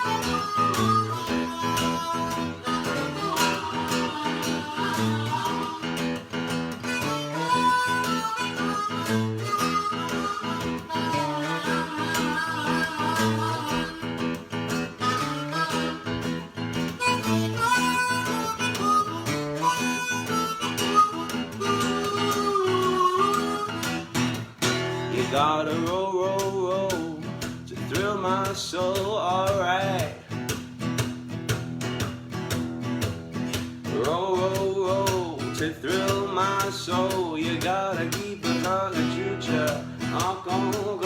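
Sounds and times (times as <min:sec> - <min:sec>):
harmonica solo: 0:00.0 - 0:26.8, 0:32.0 - 0:41.0
guitar accompaniment: 0:00.0 - 0:41.0.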